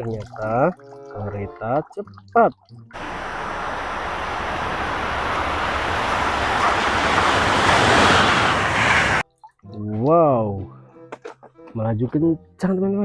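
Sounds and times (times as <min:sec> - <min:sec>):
high-speed train passing: 0:03.0 - 0:09.2.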